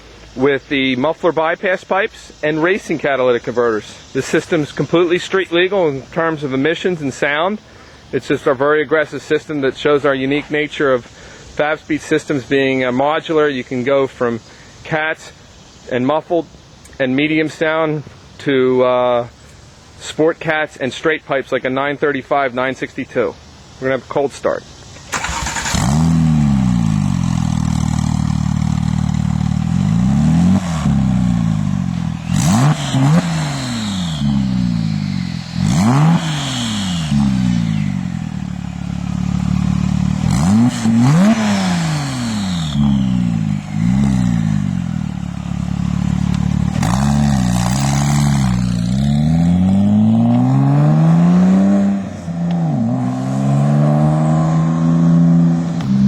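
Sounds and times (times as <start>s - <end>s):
car engine idling: 0.0s - 15.9s, 24.8s - 56.0s
car engine revving: 25.1s - 56.0s.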